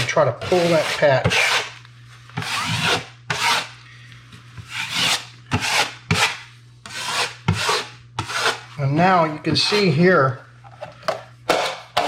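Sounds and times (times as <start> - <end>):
drywall knife scraping compound: 0.0 - 3.8, 4.6 - 10.4
low steady hum: 0.0 - 12.0.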